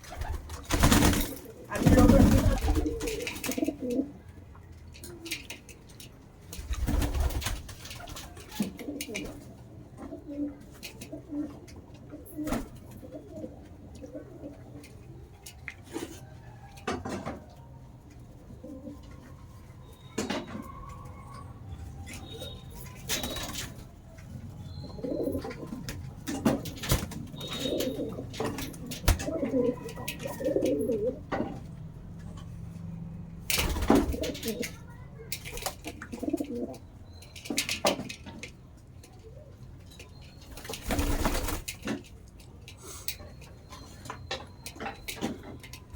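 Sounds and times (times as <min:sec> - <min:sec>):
pigeons cooing: 0:00.0 - 0:04.4, 0:08.0 - 0:17.4, 0:18.4 - 0:32.6, 0:33.5 - 0:37.0.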